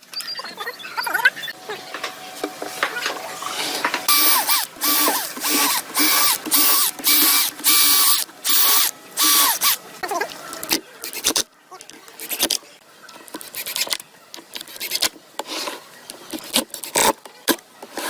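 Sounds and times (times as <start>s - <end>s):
power tool motor bursts: 4.1s - 9.8s.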